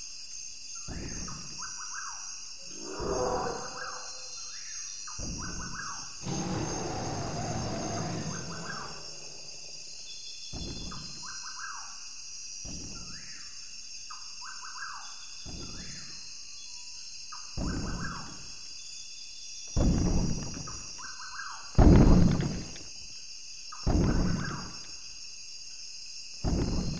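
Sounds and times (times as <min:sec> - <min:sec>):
high insect drone: 0:00.0 - 0:26.9
birds chirping: 0:02.6 - 0:04.4, 0:05.1 - 0:09.8.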